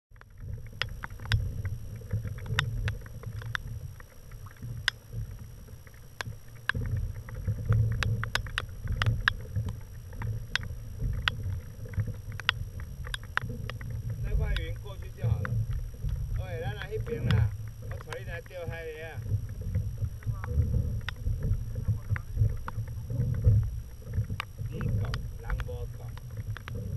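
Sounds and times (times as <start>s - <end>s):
clicks and knocks from boat: 0.1s - 26.9s
rumble of water and wind: 0.1s - 26.9s.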